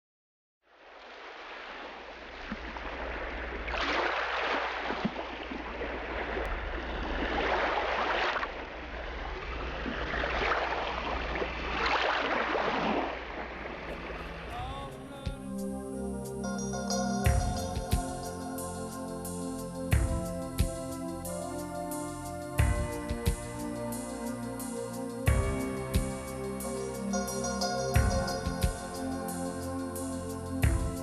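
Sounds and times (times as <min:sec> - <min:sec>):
sea water rushing and splashing: 0:00.8 - 0:16.1
steady low rumble: 0:08.5 - 0:11.8, 0:13.1 - 0:29.3.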